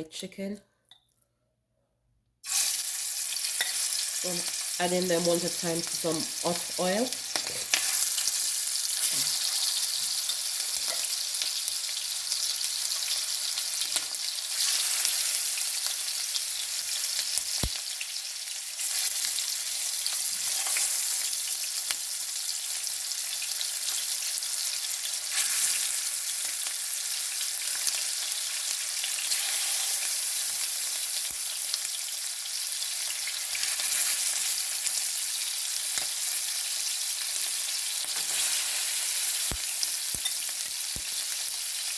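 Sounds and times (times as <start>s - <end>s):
chicken sizzling in hot oil: 2.4s - 41.9s.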